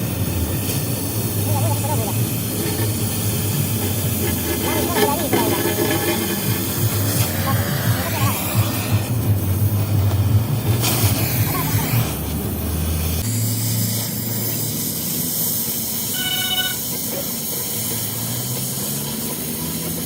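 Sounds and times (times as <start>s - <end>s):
steady hissing noise: 0.0s - 18.3s
short tone: 16.1s - 16.8s.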